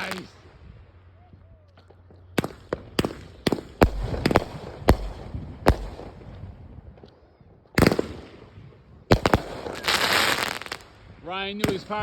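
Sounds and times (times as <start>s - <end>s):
firework bangs: 0.0s - 0.5s, 2.1s - 6.6s, 7.8s - 12.0s.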